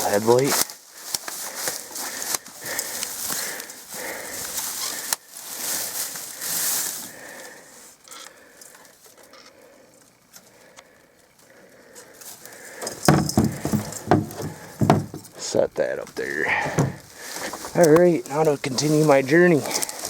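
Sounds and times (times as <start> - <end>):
objects rustling and crackling: 0.0 - 20.0
loud knocks: 13.0 - 15.3, 16.6 - 17.1.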